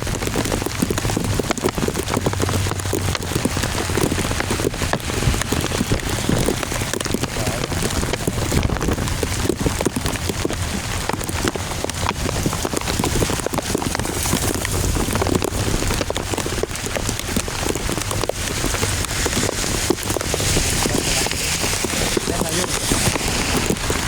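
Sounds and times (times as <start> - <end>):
heavy rain patter: 0.0 - 24.0.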